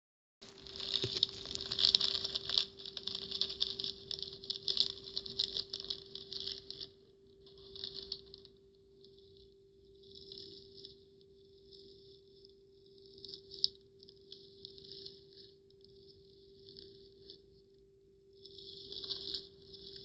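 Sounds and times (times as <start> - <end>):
slime crackling and popping: 0.4 - 8.5
faint steady hum: 0.4 - 20.0.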